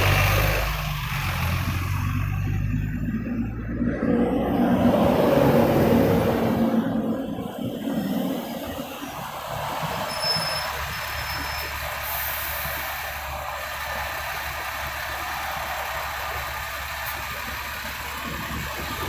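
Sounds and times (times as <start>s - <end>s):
traffic engine and tyre noise: 0.0s - 19.0s.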